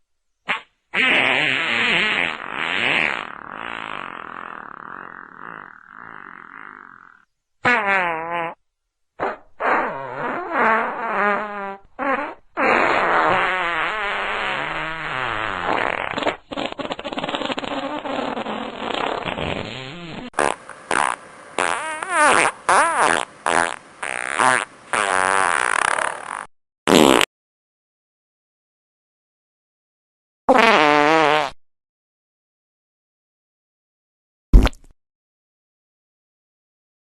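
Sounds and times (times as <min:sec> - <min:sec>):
fart sounds: 0:00.5 - 0:08.6, 0:09.2 - 0:27.3, 0:30.5 - 0:31.6, 0:34.6 - 0:34.9.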